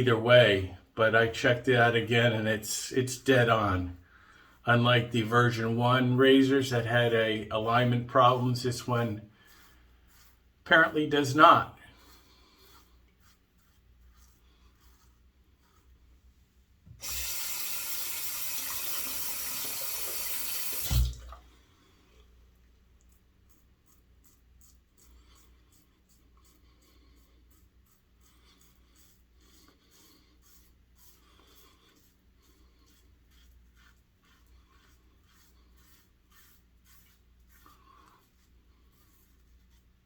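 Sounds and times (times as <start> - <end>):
razor scratching through stubble: 6.2 - 16.0, 23.4 - 40.0
sink tap running: 16.9 - 21.4.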